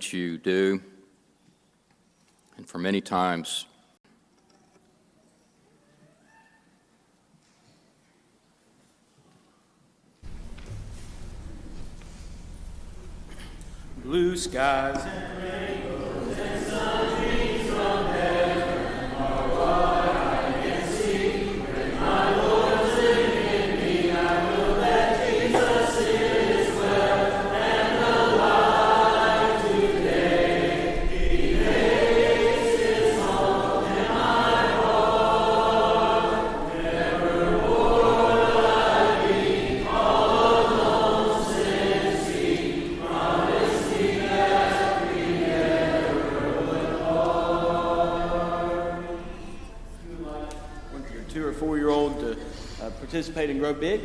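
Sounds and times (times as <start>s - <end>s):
congregation singing a hymn: 13.3s - 54.0s.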